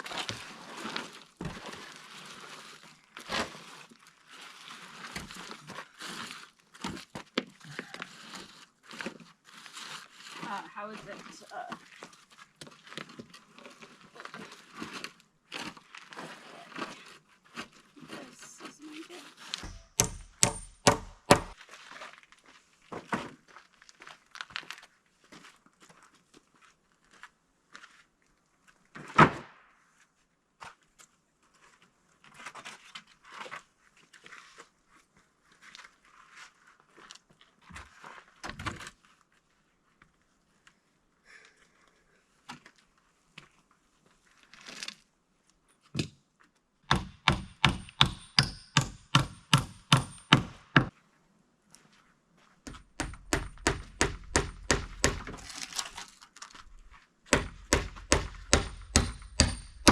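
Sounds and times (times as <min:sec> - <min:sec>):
hammer driving nails into wood: 0:19.6 - 0:21.6, 0:46.9 - 0:50.9, 0:52.7 - 0:55.4, 0:57.3 - 0:59.9.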